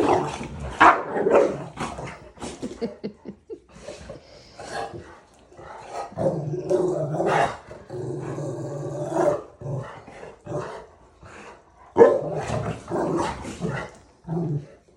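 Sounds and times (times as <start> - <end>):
dogs growling: 0.0 - 3.1, 3.8 - 14.9
dog barking: 12.0 - 12.2.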